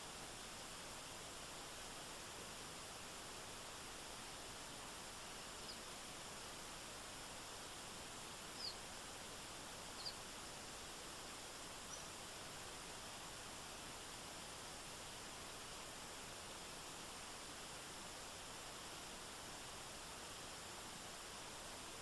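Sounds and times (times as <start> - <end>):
small bird chirping: 5.6 - 5.9, 8.5 - 8.9, 9.9 - 10.3, 11.9 - 12.1.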